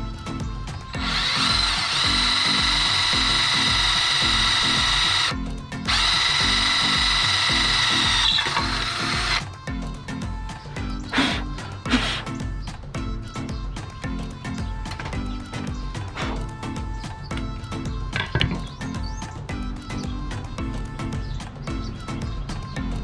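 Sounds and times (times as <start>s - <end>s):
electric drill running: 1.0s - 9.6s, 11.0s - 12.3s.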